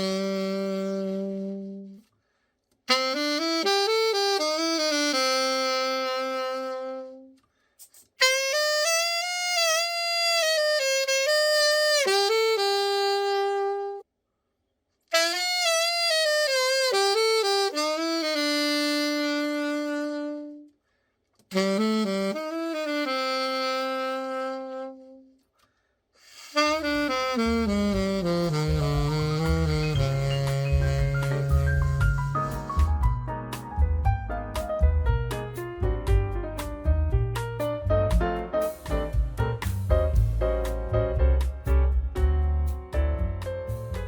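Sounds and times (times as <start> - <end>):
alto saxophone melody: 0.0 - 2.1, 2.8 - 7.5, 8.2 - 14.1, 15.1 - 20.8, 21.4 - 25.5, 26.2 - 35.2, 35.8 - 43.8
backing music with bass line: 26.8 - 44.0.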